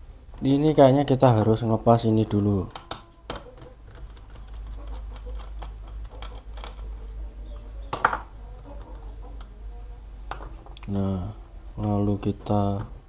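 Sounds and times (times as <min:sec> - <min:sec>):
laptop parts clicking and tapping: 0:02.3 - 0:06.9.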